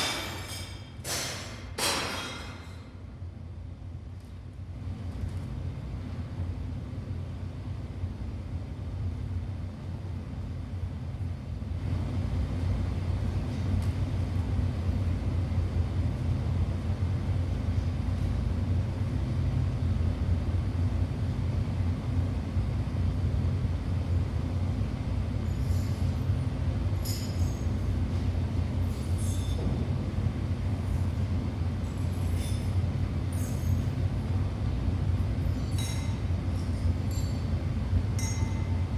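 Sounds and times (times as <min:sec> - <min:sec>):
low train-like rumble: 0:02.6 - 0:38.9
light clinks: 0:27.0 - 0:27.7, 0:35.5 - 0:37.6, 0:38.2 - 0:38.9.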